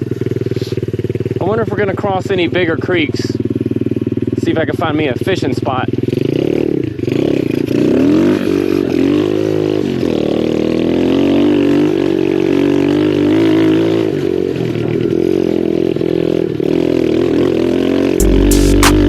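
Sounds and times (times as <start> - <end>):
motorbike engine revving: 6.1 - 19.0.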